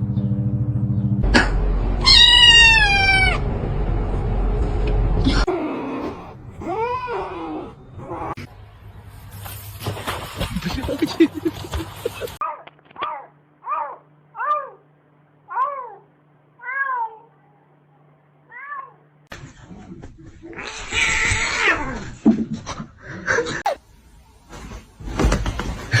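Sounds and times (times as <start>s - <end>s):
gliding cries: 1.9s - 3.6s, 5.2s - 8.5s
cat meowing: 2.0s - 3.4s, 6.0s - 8.4s, 15.5s - 16.0s, 16.6s - 17.3s.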